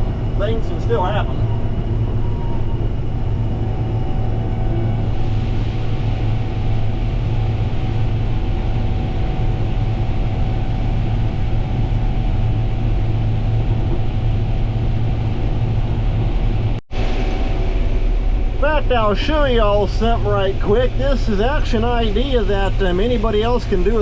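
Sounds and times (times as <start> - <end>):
engine droning: 0.0 - 24.0
faint steady whine: 0.0 - 24.0
machinery hiss: 3.5 - 11.3.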